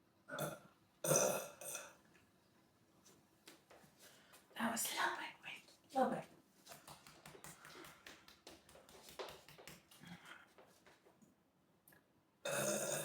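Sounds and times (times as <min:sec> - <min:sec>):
woman burping: 0:00.3 - 0:01.9, 0:12.5 - 0:13.0.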